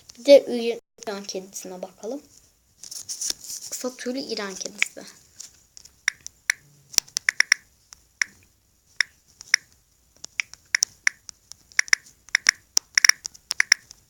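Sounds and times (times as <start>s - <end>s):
keyboard key clicks: 7.2s - 7.6s, 9.0s - 13.9s.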